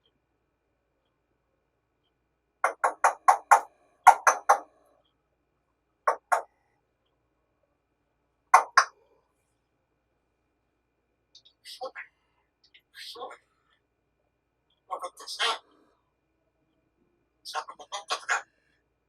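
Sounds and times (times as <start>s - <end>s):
parrot making sharp calls: 2.7s - 4.7s, 14.9s - 15.7s, 17.5s - 18.5s.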